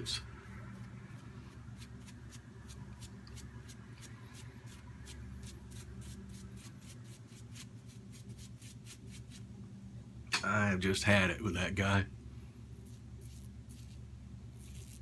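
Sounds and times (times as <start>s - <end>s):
razor scraping stubble: 0.6s - 9.4s, 12.8s - 15.0s.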